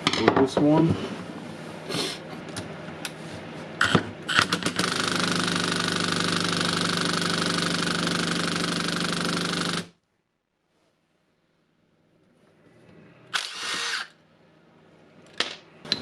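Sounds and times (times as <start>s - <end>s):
electric drill motor running: 4.6s - 9.9s, 13.3s - 14.2s.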